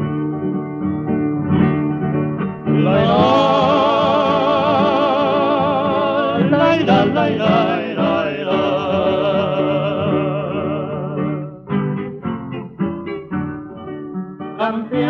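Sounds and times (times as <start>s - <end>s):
wordless singing with vibrato: 2.7s - 11.8s, 14.6s - 15.0s.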